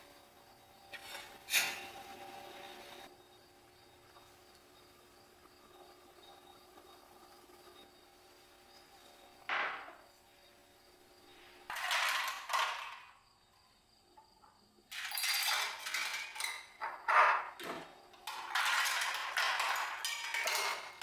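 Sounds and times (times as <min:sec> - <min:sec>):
kitchenware scraping and rustling: 0:00.8 - 0:03.1, 0:08.7 - 0:10.1, 0:11.3 - 0:13.2, 0:14.4 - 0:21.0.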